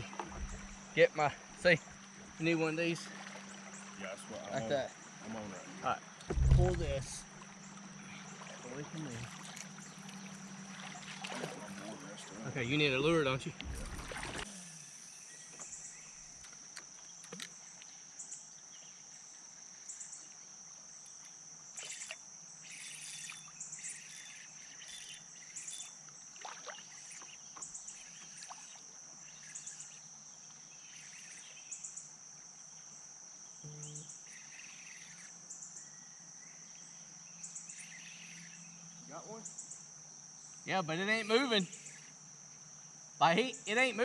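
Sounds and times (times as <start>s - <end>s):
insects droning: 0.0s - 44.0s
short cricket chirps: 0.0s - 44.0s.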